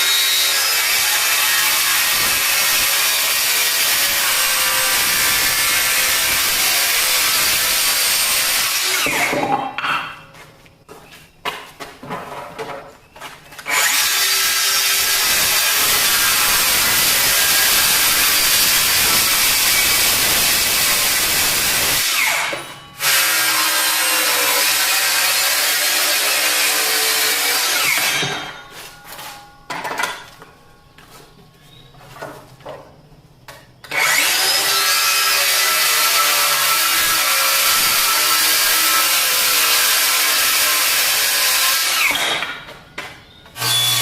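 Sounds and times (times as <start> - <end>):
bandsaw cutting wood: 0.0 - 9.6, 13.6 - 28.6, 33.9 - 42.5, 43.6 - 44.0.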